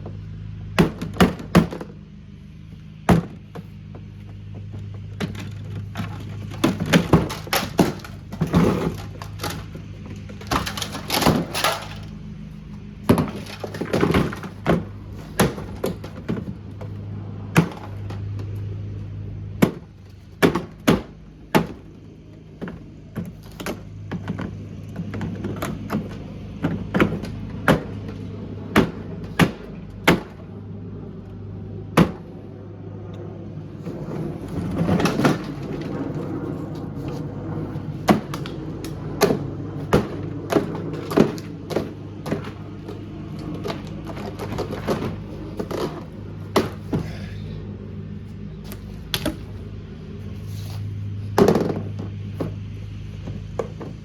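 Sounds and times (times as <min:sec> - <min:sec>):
low hum: 0:00.0 - 0:54.0
washing machine being smashed: 0:00.8 - 0:01.9, 0:03.1 - 0:03.7, 0:05.2 - 0:12.2, 0:13.0 - 0:16.9, 0:17.5 - 0:18.2, 0:19.6 - 0:30.5, 0:31.9 - 0:32.3, 0:34.1 - 0:36.3, 0:37.9 - 0:47.3.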